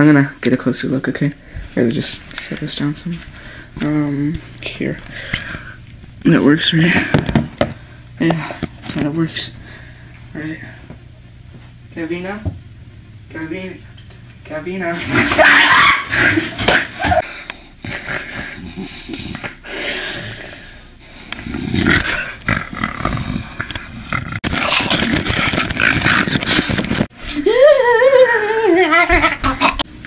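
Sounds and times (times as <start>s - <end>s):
high wavering howl-like cry: 15.3s - 17.2s
animal-like growling and snarling: 21.3s - 27.1s.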